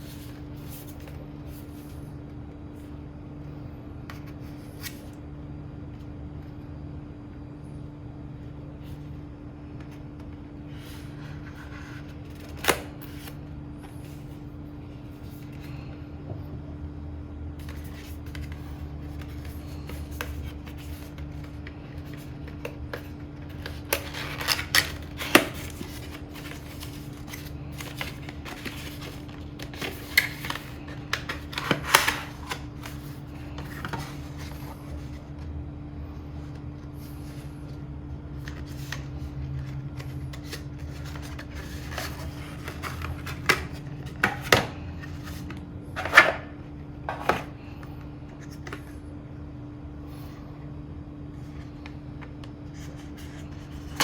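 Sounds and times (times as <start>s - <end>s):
steady low hum: 0.0s - 54.0s
hands handling packaging: 9.8s - 14.4s, 17.6s - 35.2s, 38.4s - 49.0s.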